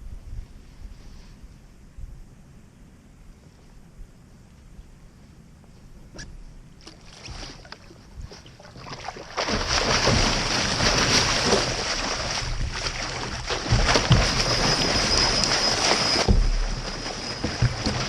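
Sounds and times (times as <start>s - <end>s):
water sloshing and splashing: 6.7s - 18.0s.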